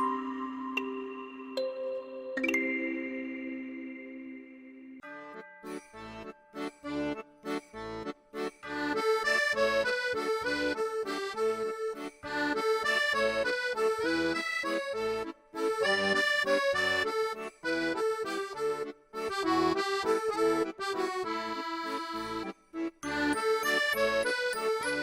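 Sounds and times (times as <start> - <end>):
accordion melody music: 0.0 - 25.0.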